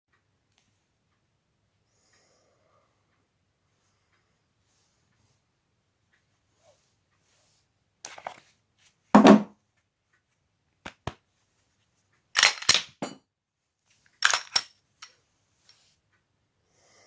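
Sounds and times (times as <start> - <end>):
pistol metallic clicks and clacks: 12.3 - 13.0, 14.2 - 15.2.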